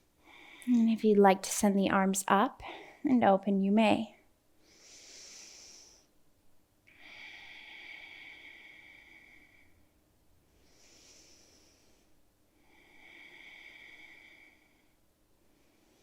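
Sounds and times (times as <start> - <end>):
person breathing through nose: 4.6 - 6.1, 10.6 - 15.0.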